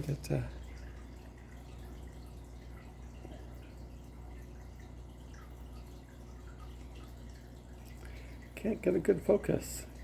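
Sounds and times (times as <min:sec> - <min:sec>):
aquarium water trickling: 0:00.0 - 0:10.0
steady low hum: 0:00.0 - 0:10.0
water bubbles: 0:00.0 - 0:10.0.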